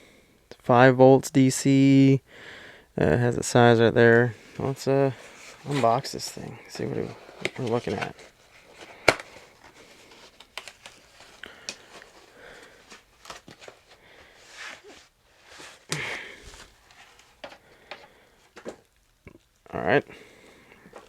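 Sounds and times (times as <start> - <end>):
packaging crinkling and rustling: 5.1 - 19.1.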